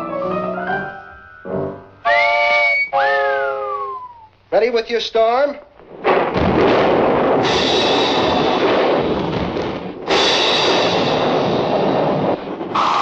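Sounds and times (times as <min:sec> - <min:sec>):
rushing hiss of storm effect: 0:07.4 - 0:13.0.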